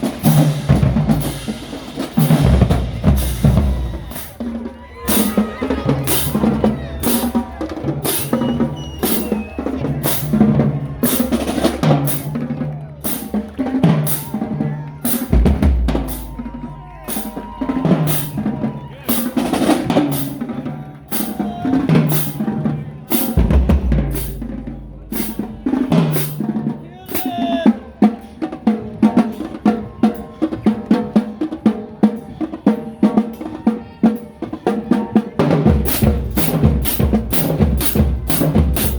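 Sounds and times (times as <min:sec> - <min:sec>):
marching drumline playing: 0:00.0 - 0:38.9
deep bass drum booms: 0:15.3 - 0:16.9, 0:23.4 - 0:25.6.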